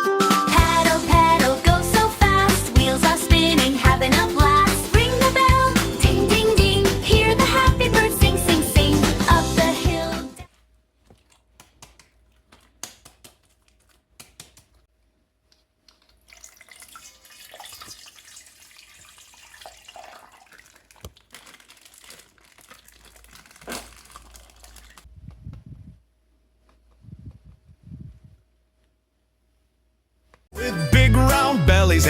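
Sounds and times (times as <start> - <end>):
water splashing: 16.0 - 25.1
plastic bag crinkling: 19.1 - 25.1.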